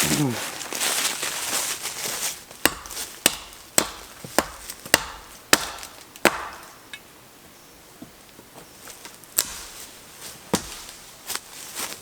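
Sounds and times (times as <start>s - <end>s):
axe chopping wood: 2.6s - 6.9s, 9.4s - 9.8s, 10.5s - 11.0s.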